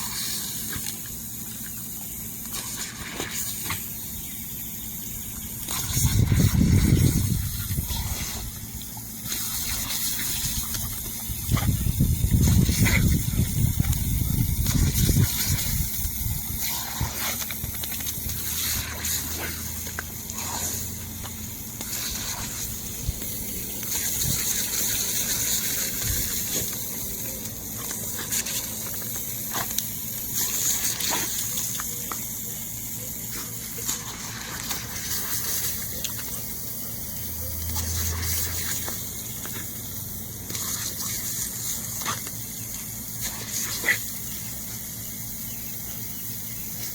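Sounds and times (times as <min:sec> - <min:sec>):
lawn sprinkler spraying water: 0:00.0 - 0:46.9
low rumble: 0:04.0 - 0:28.8.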